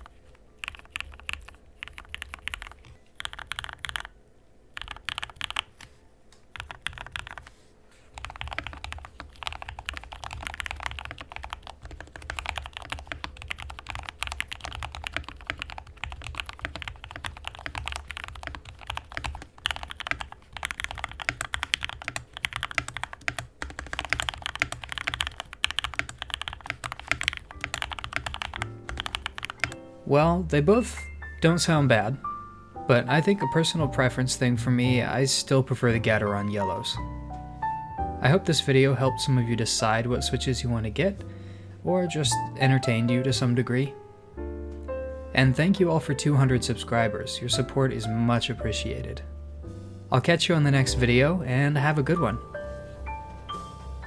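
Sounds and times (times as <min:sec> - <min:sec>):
mechanical keyboard typing: 0:00.0 - 0:04.2, 0:04.8 - 0:05.9, 0:06.5 - 0:07.5, 0:08.1 - 0:29.8.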